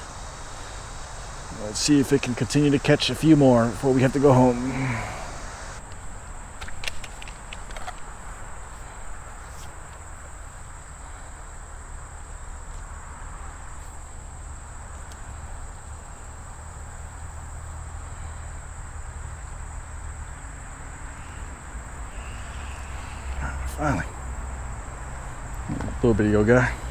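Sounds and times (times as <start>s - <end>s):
insect chorus trilling: 0.0s - 5.8s, 14.4s - 26.9s.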